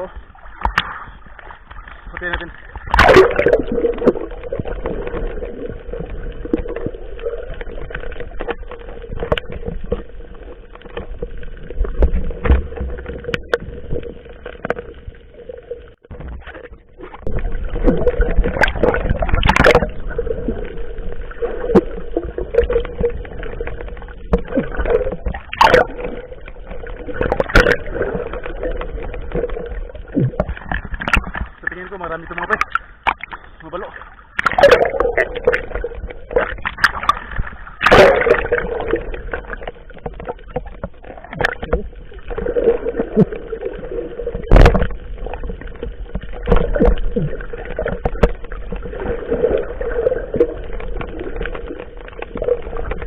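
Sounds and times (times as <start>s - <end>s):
water noise: 0.0s - 53.0s
sharp splashes or knocks: 0.5s - 5.6s, 16.0s - 20.2s, 26.8s - 31.8s, 34.3s - 43.4s, 44.3s - 53.0s.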